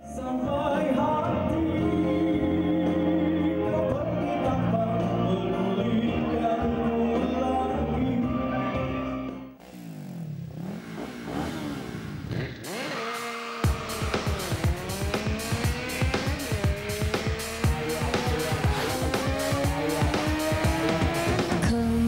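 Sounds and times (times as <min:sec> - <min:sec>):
car engine revving: 0:09.5 - 0:22.0
music with sustained chords: 0:13.7 - 0:22.0.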